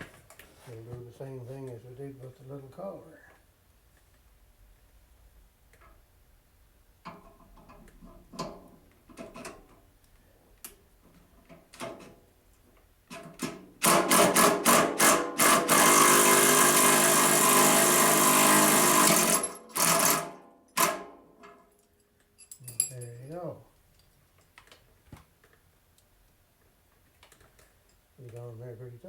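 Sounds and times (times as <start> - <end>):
power tool striking: 13.8 - 21.2
metal tools knocking and clanking: 22.4 - 23.3.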